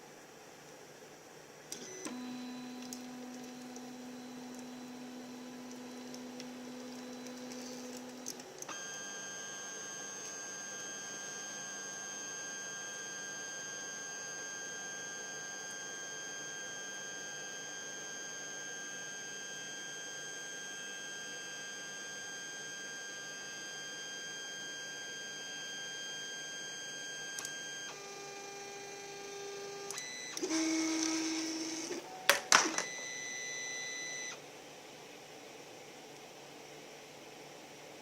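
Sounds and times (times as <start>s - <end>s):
stepper motors whining: 29.9s - 34.4s.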